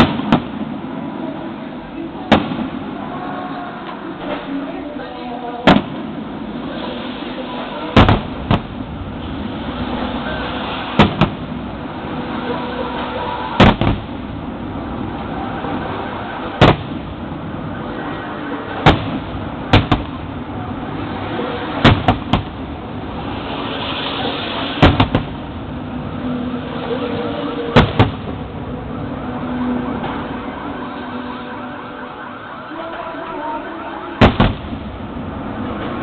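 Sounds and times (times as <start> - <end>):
fireworks bangs: 0.0 - 1.0, 2.2 - 3.2, 5.6 - 25.9, 26.6 - 31.2, 34.1 - 36.0
background rumble: 0.0 - 31.4, 34.2 - 36.0
high hiss: 23.1 - 25.0.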